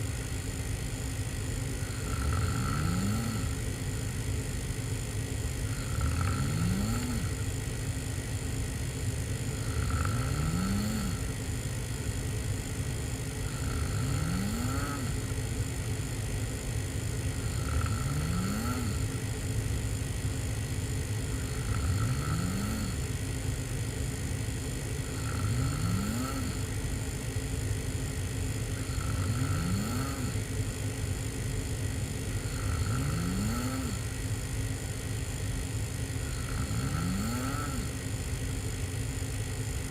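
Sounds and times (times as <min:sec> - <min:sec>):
person snoring: 0:01.6 - 0:03.9, 0:05.2 - 0:07.6, 0:09.4 - 0:11.6, 0:13.2 - 0:15.5, 0:17.3 - 0:19.3, 0:21.0 - 0:23.3, 0:25.0 - 0:26.8, 0:28.6 - 0:30.8, 0:32.3 - 0:34.2, 0:36.0 - 0:38.0.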